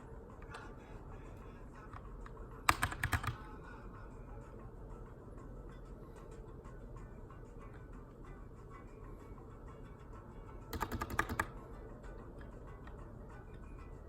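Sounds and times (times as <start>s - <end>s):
mechanical keyboard typing: 2.7s - 3.4s, 10.7s - 11.6s.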